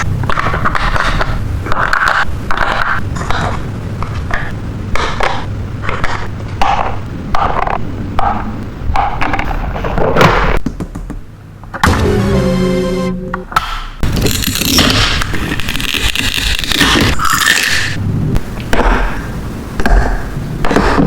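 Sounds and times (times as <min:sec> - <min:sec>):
steady pitched tone: 0:11.8 - 0:13.6.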